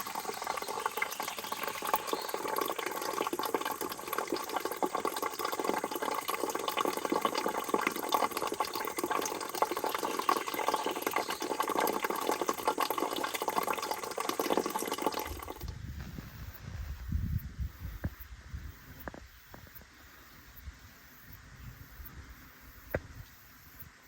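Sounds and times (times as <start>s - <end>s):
water running and splashing: 0.0s - 15.7s.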